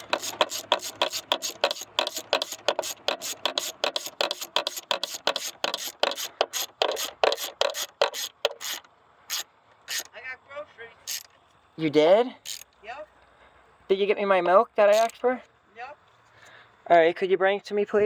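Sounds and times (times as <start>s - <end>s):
socket ratchet clicking: 0.0s - 10.1s, 11.1s - 11.3s, 12.5s - 12.7s, 14.9s - 15.2s.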